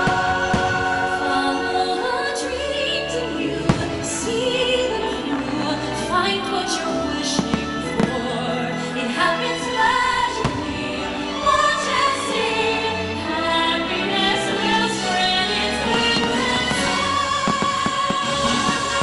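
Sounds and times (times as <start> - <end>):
orchestral music with choir: 0.0 - 19.0
firework bangs: 15.8 - 19.0.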